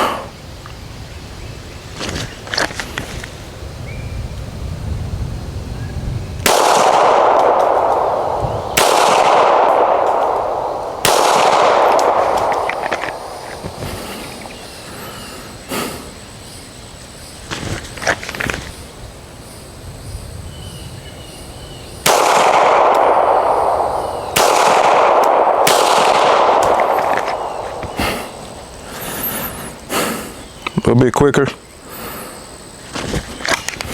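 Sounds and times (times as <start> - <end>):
handgun shots ringing: 6.4 - 14.7, 22.0 - 29.6.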